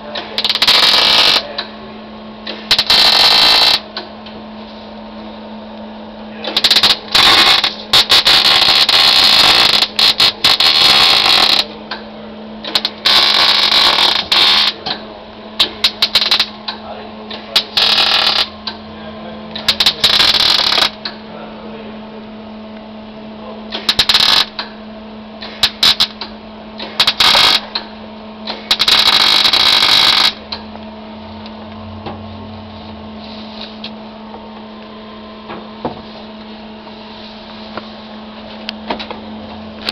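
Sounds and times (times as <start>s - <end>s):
steady low hum: 0.0s - 39.9s
welding arc crackling: 0.3s - 1.5s, 2.6s - 3.9s, 6.5s - 11.7s, 12.7s - 14.8s, 15.6s - 16.6s, 17.5s - 18.5s, 19.6s - 21.0s, 23.8s - 24.6s, 25.5s - 26.2s, 26.8s - 27.8s, 28.5s - 30.4s.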